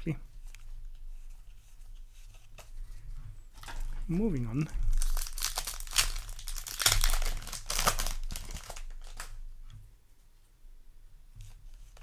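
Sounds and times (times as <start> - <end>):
foil wrapper crinkling and tearing: 3.6 - 4.0, 4.7 - 9.4.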